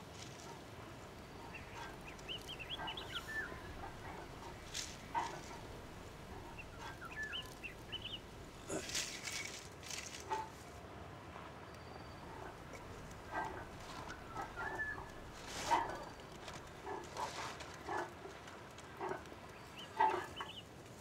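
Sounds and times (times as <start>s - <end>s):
scuffs and rustles: 0.0s - 19.9s
chickens clucking: 1.3s - 10.5s, 12.2s - 18.1s.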